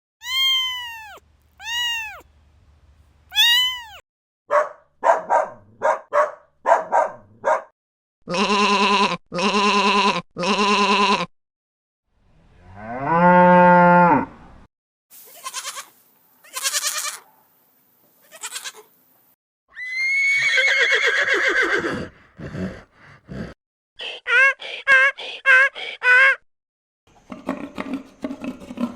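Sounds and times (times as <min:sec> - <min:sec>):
baby animals calling: 0:00.2 - 0:02.3, 0:03.3 - 0:04.0, 0:15.3 - 0:17.3, 0:18.2 - 0:18.9.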